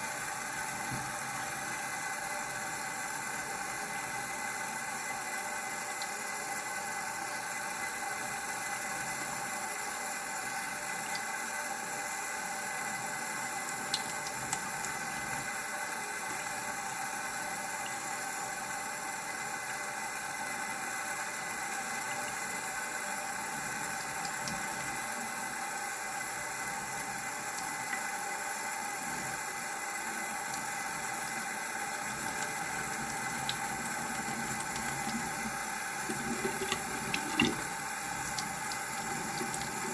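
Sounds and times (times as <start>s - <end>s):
water running from tap: 0.0s - 39.9s.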